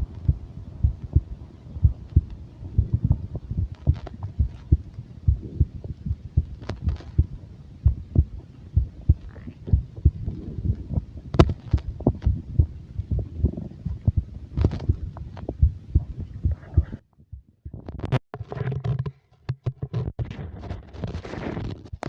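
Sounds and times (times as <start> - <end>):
stomach growling: 0.0 - 17.0.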